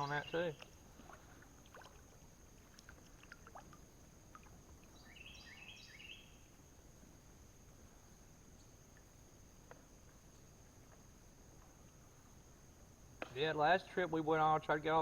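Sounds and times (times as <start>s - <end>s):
faint ticks and drips: 0.1s - 5.0s, 8.6s - 12.2s.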